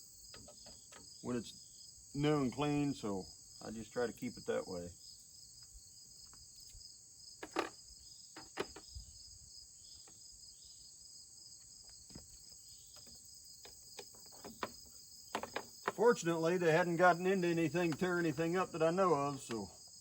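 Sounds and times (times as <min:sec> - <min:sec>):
crickets chirring: 0:00.0 - 0:20.0
light clicks and knocks: 0:11.8 - 0:16.2.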